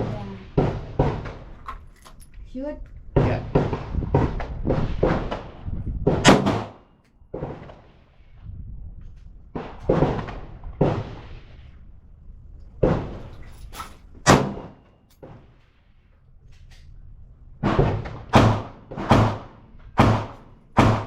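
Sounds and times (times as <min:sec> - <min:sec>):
handgun shots: 0:14.3 - 0:14.8, 0:17.6 - 0:21.0.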